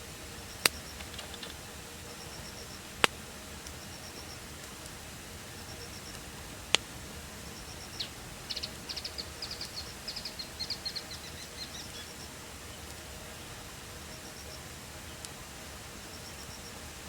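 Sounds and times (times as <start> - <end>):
campfire hissing: 0.0 - 17.0
bird chirping: 5.5 - 13.2.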